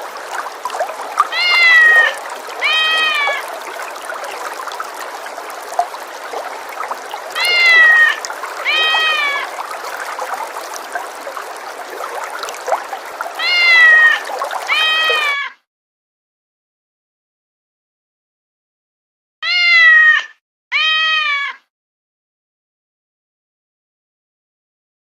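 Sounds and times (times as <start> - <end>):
cat meowing: 1.3 - 3.4, 7.4 - 9.5, 13.4 - 15.6, 19.4 - 21.6.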